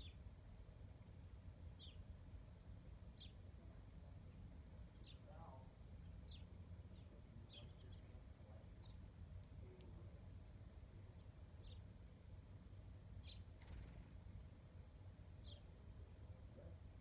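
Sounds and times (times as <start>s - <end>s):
small bird chirping: 1.7s - 2.1s, 2.7s - 3.6s, 4.3s - 5.4s, 6.0s - 9.1s, 11.2s - 11.9s, 13.2s - 14.1s, 15.4s - 15.7s.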